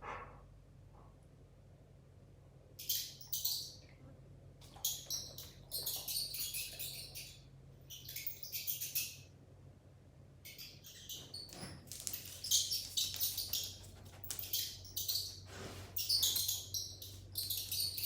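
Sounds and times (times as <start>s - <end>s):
high-pitched mouse squeaks: 4.8s - 9.2s, 10.5s - 15.4s, 16.0s - 18.0s.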